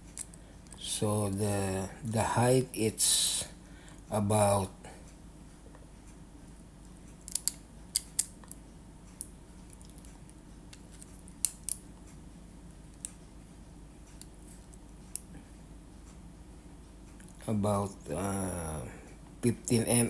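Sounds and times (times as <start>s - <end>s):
small sharp clicks and taps: 7.2s - 12.2s.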